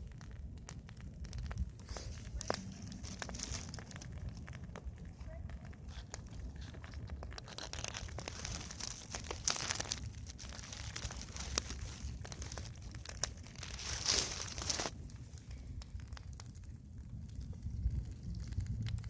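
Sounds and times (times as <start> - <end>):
low steady rumble: 0.0 - 19.0
wood fire crackling and popping: 0.0 - 19.0.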